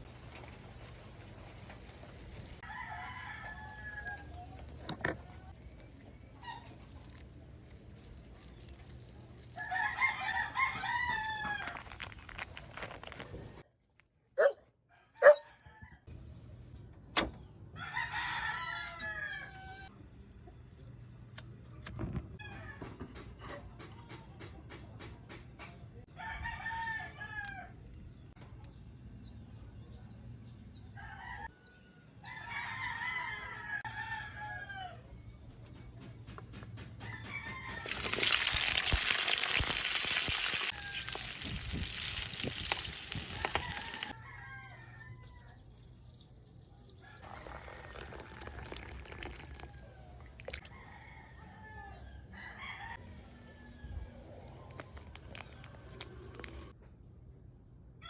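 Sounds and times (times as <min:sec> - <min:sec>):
roosters crowing: 0:01.4 - 0:04.5, 0:08.3 - 0:12.2, 0:17.8 - 0:19.9, 0:26.1 - 0:27.8, 0:32.2 - 0:35.1, 0:37.0 - 0:45.6, 0:47.0 - 0:56.7.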